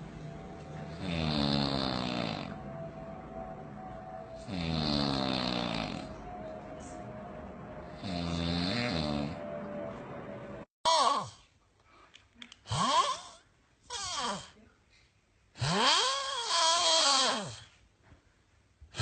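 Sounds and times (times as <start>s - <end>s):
man snoring: 0.9s - 2.6s, 4.5s - 6.1s.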